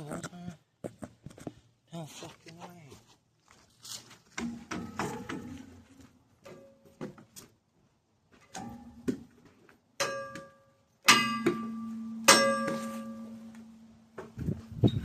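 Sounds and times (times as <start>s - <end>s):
metal clangs ringing: 8.5s - 9.2s, 10.0s - 13.9s.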